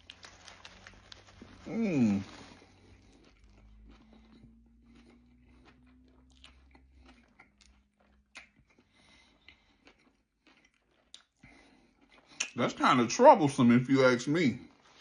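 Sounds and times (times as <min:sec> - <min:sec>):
chewing food: 0:00.0 - 0:13.1
mouth clicks and smacks: 0:03.3 - 0:12.7.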